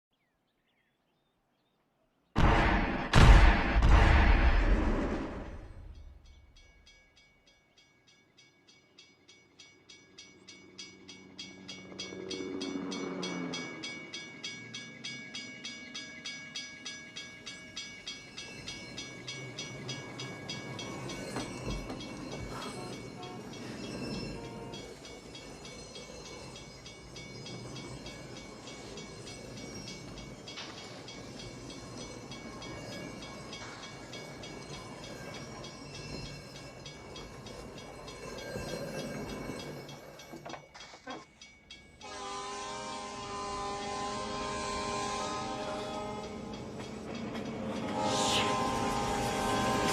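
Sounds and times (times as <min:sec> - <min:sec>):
railroad crossing bell ringing: 0:05.5 - 0:49.9
train rumbling: 0:08.8 - 0:49.9
train horn chord: 0:22.5 - 0:23.6, 0:42.0 - 0:46.8, 0:47.8 - 0:49.9.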